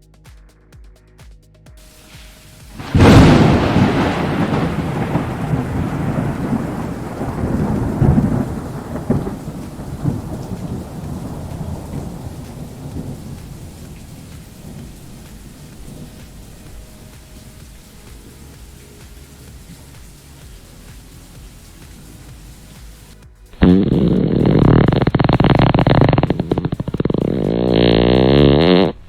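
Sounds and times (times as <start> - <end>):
thunder crack and rumble: 2.7 - 20.2, 23.6 - 29.0.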